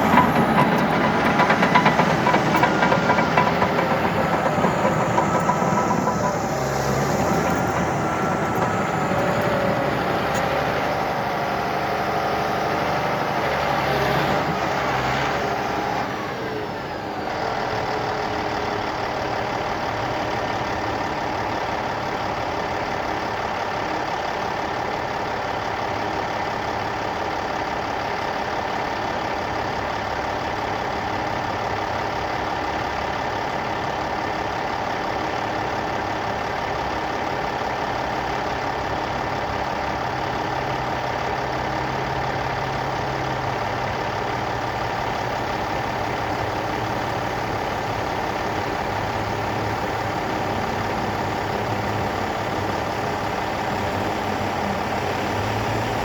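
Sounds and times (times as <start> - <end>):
steady whine: 0.0 - 11.9
heavy diesel machinery drone: 0.0 - 22.9, 33.0 - 56.0.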